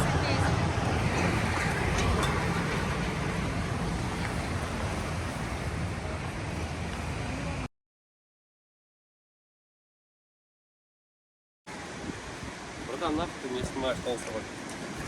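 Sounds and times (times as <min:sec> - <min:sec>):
steady rushing noise: 0:00.0 - 0:07.7.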